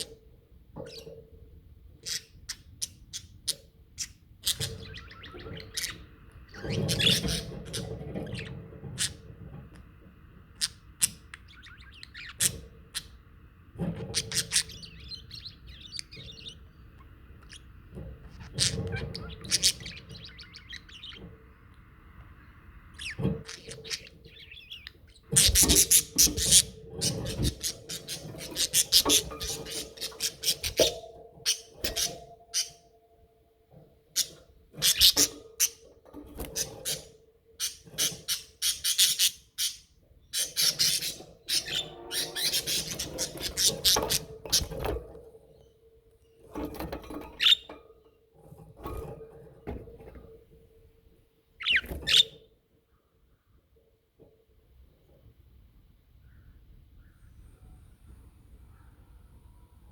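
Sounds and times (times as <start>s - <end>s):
budgerigars chirping: 2.0s - 9.3s, 10.5s - 13.2s, 14.0s - 21.6s, 22.4s - 32.9s, 34.1s - 44.9s, 51.6s - 52.4s.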